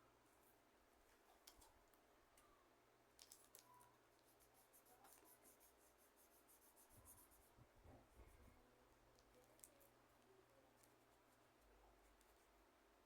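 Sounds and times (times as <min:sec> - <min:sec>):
brush scratching on plastic: 0:03.5 - 0:07.6.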